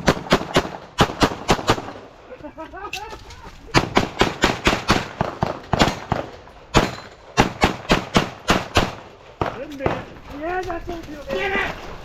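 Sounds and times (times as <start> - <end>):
pistol shots: 0.0 - 2.0, 3.7 - 10.2.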